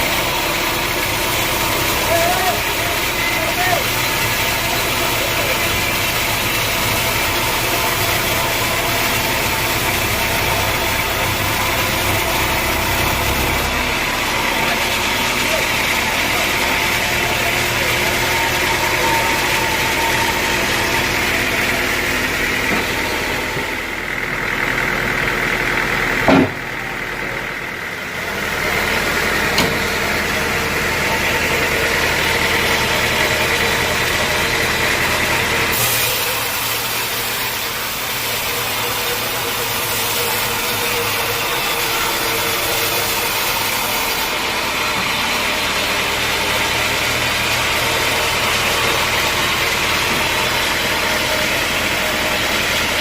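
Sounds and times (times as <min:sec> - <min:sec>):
sawmill machinery running: 0:00.0 - 0:53.0
sharp knock: 0:26.3 - 0:26.6.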